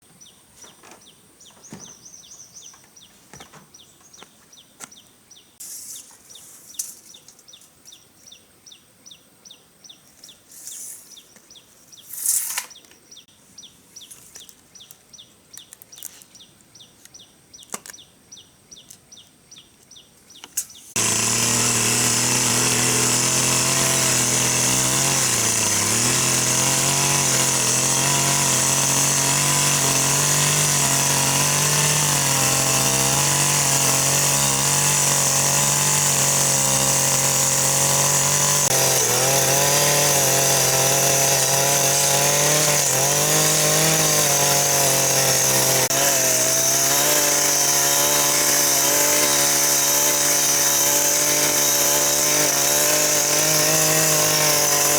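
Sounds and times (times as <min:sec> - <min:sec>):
chainsaw running: 0:20.9 - 0:54.9.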